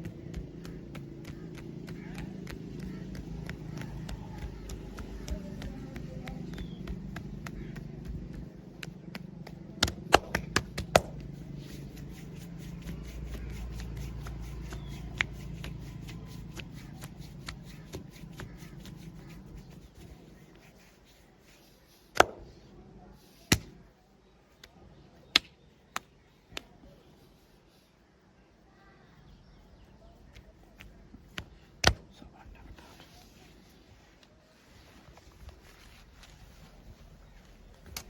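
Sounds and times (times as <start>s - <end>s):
low hum with rapid ticking: 0.0s - 19.6s.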